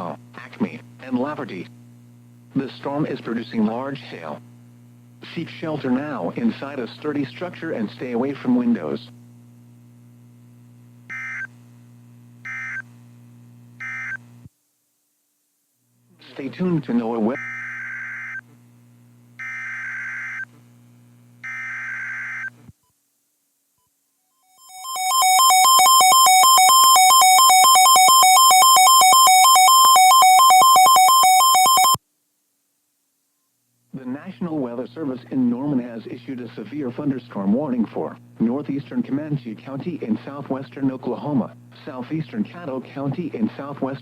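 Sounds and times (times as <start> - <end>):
steady low hum: 0.0 - 23.6
buzzy digital data bursts: 13.8 - 14.2, 19.4 - 20.5, 21.4 - 22.5, 24.5 - 32.0
two-pitch electronic alert tone: 24.6 - 32.0.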